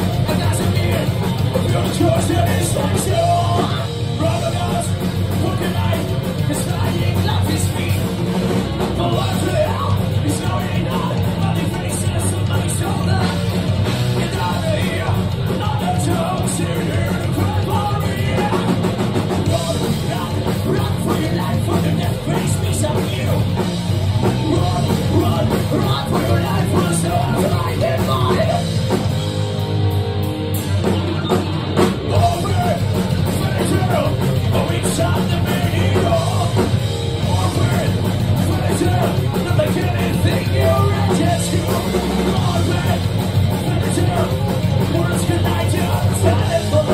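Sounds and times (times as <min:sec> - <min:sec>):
distorted electric guitars: 0:00.0 - 0:46.9
drum kit: 0:00.0 - 0:46.9.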